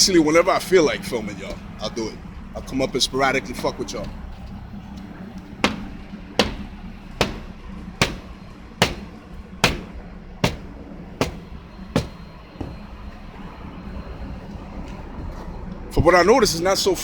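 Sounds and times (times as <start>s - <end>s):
steady low rumble: 0.0s - 15.9s
hammer blows: 4.9s - 13.1s.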